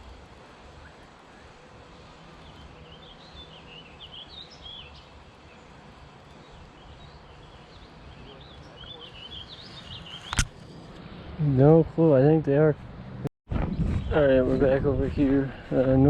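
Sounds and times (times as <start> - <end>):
low outdoor background noise: 0.0 - 13.3
songbirds chirping: 0.0 - 16.0
sharp click: 10.2 - 10.6.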